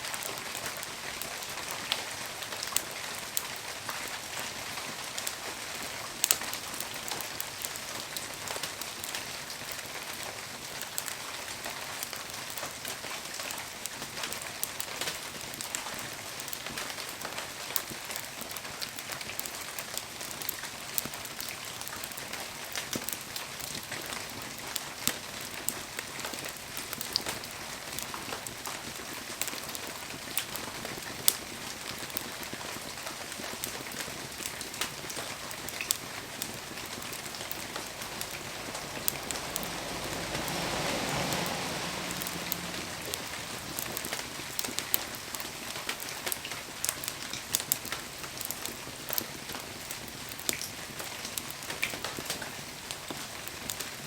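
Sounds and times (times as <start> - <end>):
bonfire hissing and crackling: 0.0 - 54.0
firewood popping: 29.7 - 53.0.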